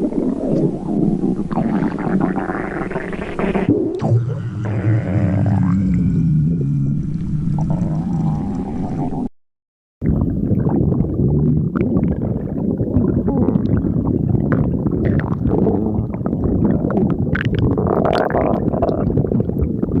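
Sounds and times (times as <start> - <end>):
stomach growling: 0.0 - 9.3, 10.0 - 20.0.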